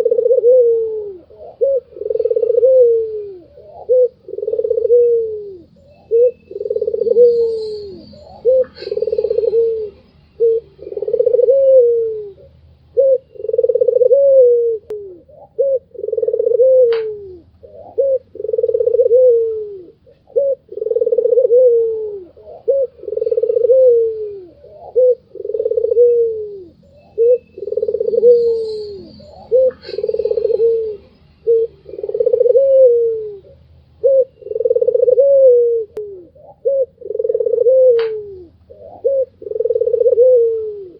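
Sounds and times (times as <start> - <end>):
dove cooing: 0.0 - 40.9
small bird chirping: 1.3 - 14.2, 22.4 - 35.2.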